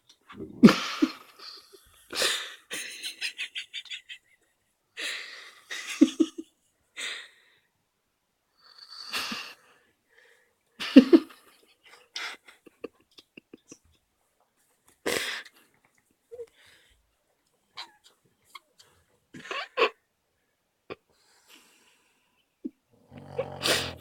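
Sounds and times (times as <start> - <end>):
loud snort: 23.0 - 24.0
person snoring loudly: 23.0 - 24.0
wheezing breaths: 23.0 - 24.0.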